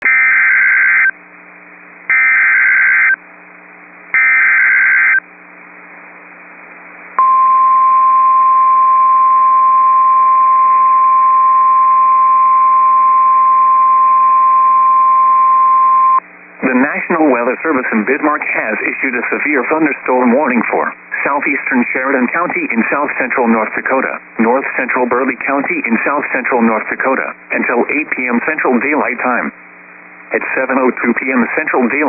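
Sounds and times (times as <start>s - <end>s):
buzzing digital data tones: 2.1s - 3.2s, 4.2s - 5.2s
steady warning alarm tone: 2.1s - 3.2s, 4.2s - 5.2s
faint radio hiss and hum: 4.9s - 14.2s, 16.1s - 32.0s.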